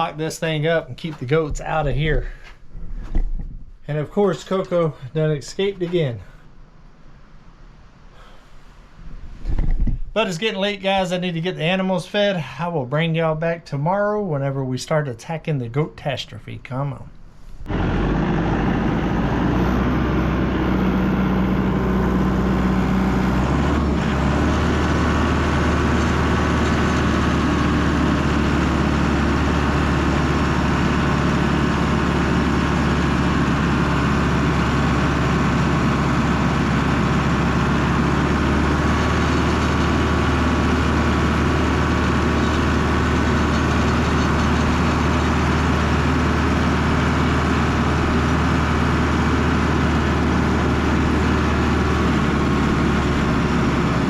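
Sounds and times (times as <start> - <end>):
vehicle engine humming: 17.6 - 54.0.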